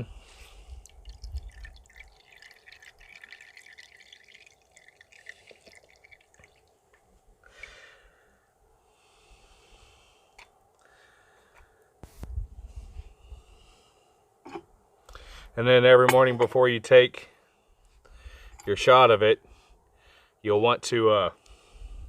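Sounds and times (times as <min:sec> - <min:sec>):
liquid dripping into a bowl: 0:00.6 - 0:07.0.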